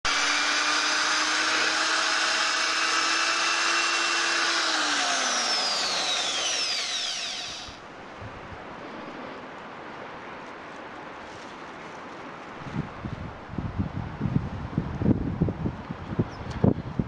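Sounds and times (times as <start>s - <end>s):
small motor whining: 0.1s - 7.8s.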